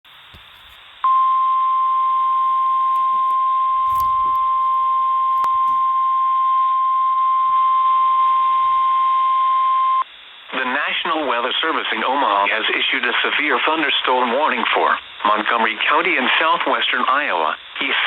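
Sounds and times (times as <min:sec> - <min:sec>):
faint radio hiss: 0:00.1 - 0:18.0.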